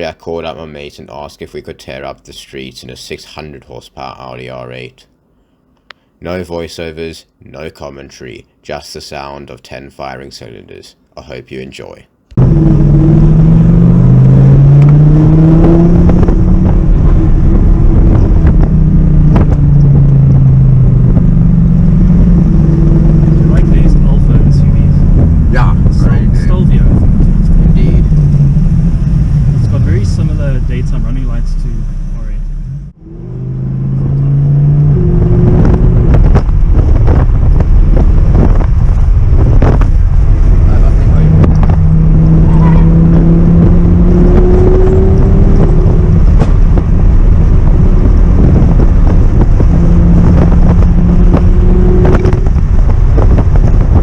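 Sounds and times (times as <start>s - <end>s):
wind buffeting microphone: 12.4s - 31.9s, 33.4s - 54.0s
car engine accelerating: 12.4s - 54.0s.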